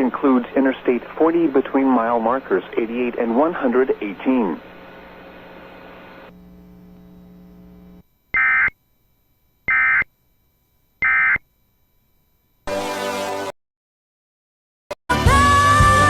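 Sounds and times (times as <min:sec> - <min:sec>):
faint broadcast hum: 0:00.0 - 0:12.6
buzzing tone: 0:04.6 - 0:13.5.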